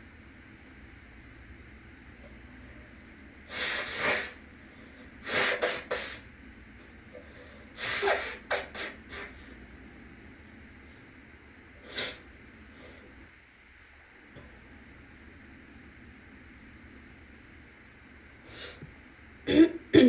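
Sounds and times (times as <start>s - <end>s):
fan humming: 0.0s - 20.0s
person sneezing: 7.8s - 9.3s.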